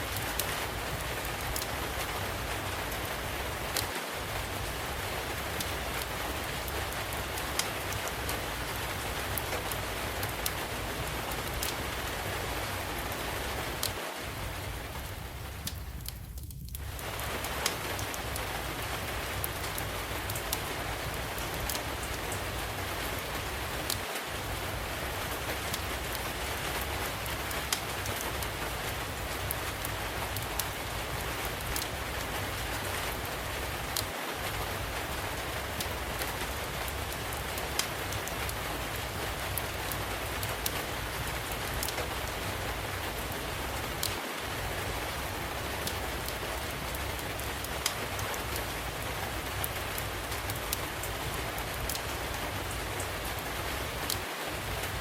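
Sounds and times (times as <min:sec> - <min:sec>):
steady rain: 0:00.0 - 0:55.0
wood fire crackling: 0:00.0 - 0:55.0
low steady rumble: 0:08.2 - 0:23.8.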